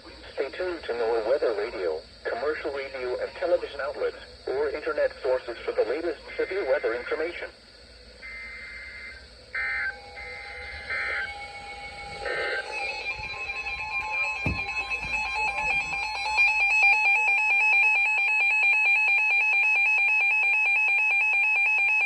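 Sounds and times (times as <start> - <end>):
buzzy digital data bursts: 8.1 - 17.4
warbling electronic alert tone: 9.5 - 17.5.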